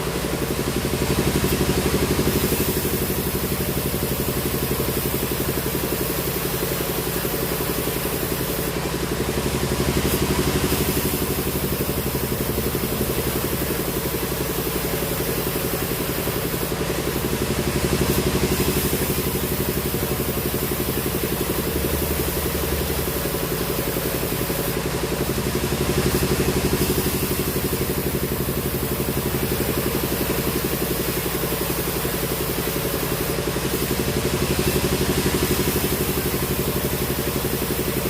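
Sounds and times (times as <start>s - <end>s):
sawmill machinery droning: 0.0s - 38.0s.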